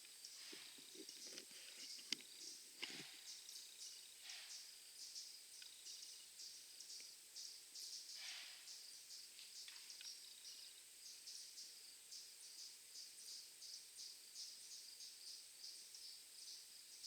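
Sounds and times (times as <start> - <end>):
insect-like chirps: 0.0 - 17.0.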